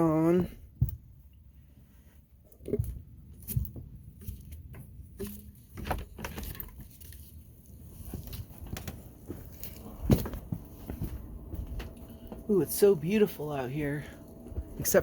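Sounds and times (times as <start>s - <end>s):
shuffling and rustling: 5.6s - 15.0s
low rumble: 9.1s - 15.0s.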